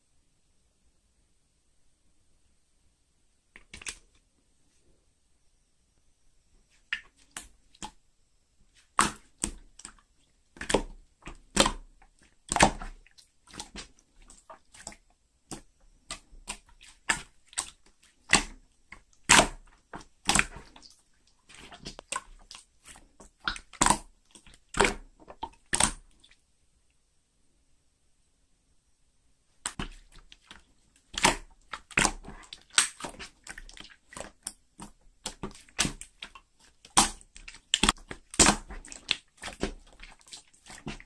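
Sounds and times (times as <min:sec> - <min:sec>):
slime squeezed wet clicks and pops: 0:11.5 - 0:11.8, 0:31.1 - 0:33.8, 0:34.4 - 0:39.7.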